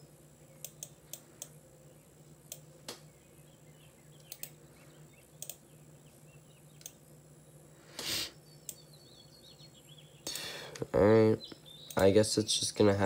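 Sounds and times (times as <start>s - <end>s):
faint steady hum: 0.0s - 13.0s
computer mouse clicks: 0.6s - 1.6s, 4.2s - 4.6s, 5.4s - 5.6s.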